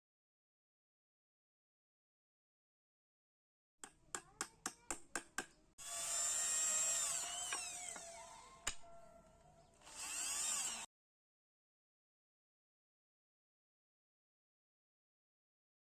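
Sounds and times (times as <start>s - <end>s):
power drill running: 5.8s - 8.4s, 9.8s - 10.9s.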